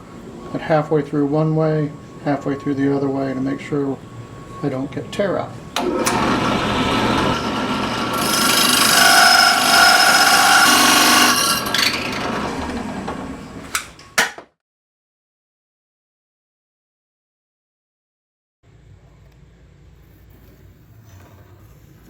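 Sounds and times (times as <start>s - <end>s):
hole saw grinding into wood: 5.8s - 13.5s.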